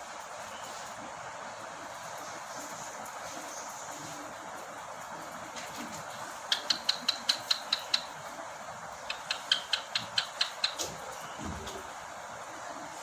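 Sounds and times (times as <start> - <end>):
cockatiel clicking: 6.4 - 8.2, 9.0 - 11.0.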